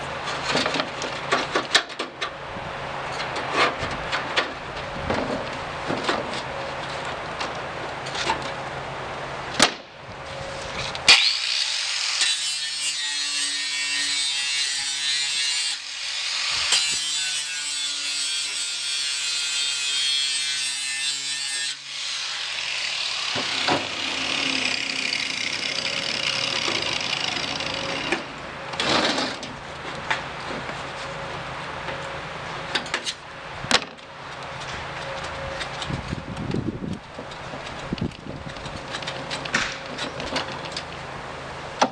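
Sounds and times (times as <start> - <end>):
angle grinder grinding metal: 11.1 - 29.4.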